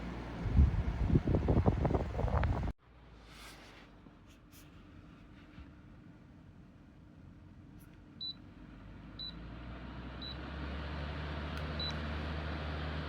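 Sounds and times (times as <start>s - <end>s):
fan air rush and motor hum: 0.0s - 2.7s.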